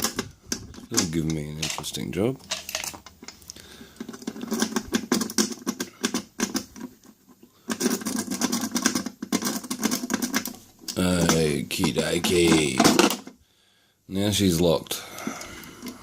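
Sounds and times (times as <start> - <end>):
lock clicking and rattling: 0.0 - 3.4, 4.0 - 6.9, 7.7 - 13.3.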